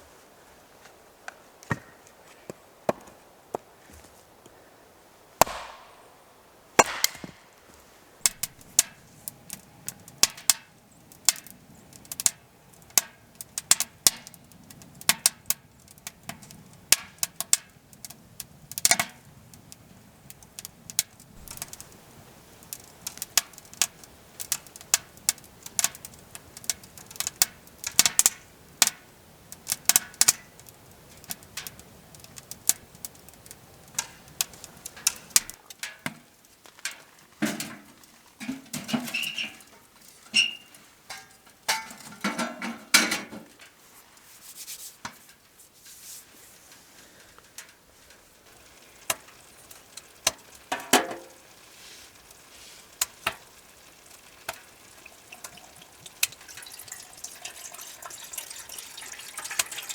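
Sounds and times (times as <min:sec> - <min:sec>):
firewood knocks and cracks: 0:05.4 - 0:09.0.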